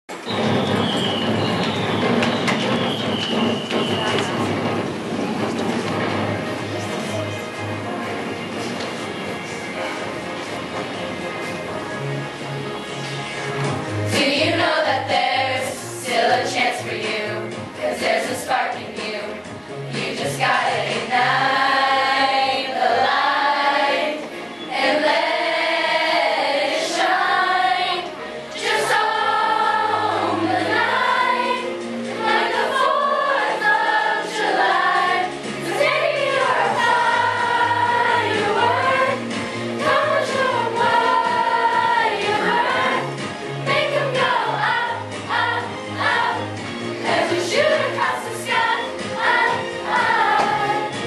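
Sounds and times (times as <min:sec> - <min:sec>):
chorus singing in unison: 0:12.4 - 0:51.0
accompaniment track with bass: 0:28.9 - 0:51.0.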